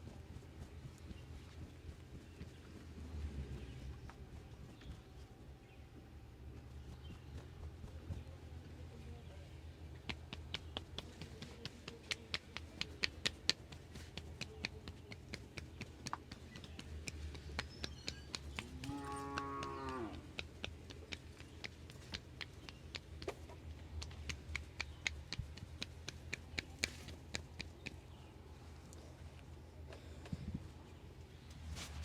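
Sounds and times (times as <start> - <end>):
quick sharp taps: 9.9 - 28.3
cow mooing: 18.8 - 20.2.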